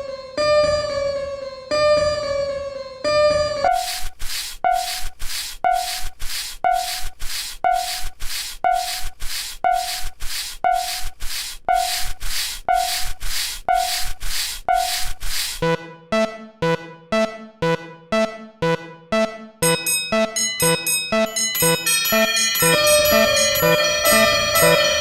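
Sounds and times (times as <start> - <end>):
repeating hissing swish: 3.7 - 15.6
short warning tone: 22.6 - 25.0.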